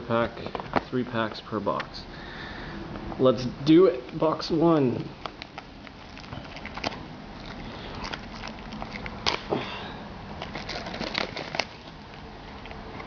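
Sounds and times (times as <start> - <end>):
plastic wrapping crinkling: 5.0 - 9.6, 10.3 - 13.0
card box snapping: 9.2 - 9.5.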